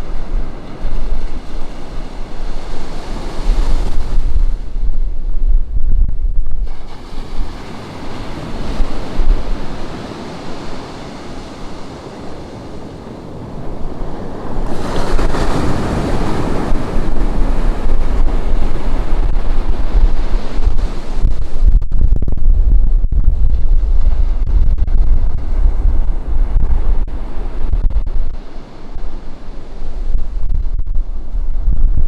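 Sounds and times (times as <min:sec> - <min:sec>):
ocean surf washing on beach: 0:00.0 - 0:05.6, 0:06.6 - 0:21.7, 0:23.5 - 0:32.0
wind rumbling on microphone: 0:00.0 - 0:32.0
wave breaking: 0:06.4 - 0:32.0.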